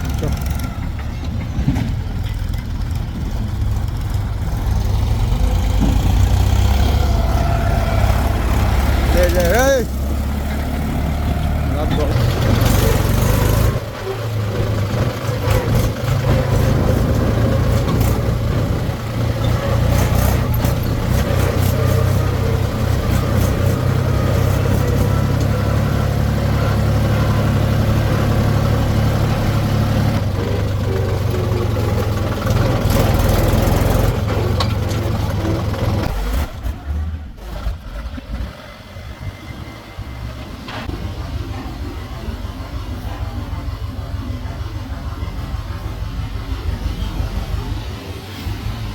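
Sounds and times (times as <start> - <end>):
knocks and clanks: 0.0 - 9.6, 10.5 - 25.9, 30.2 - 36.8
diesel engine running: 0.0 - 48.9.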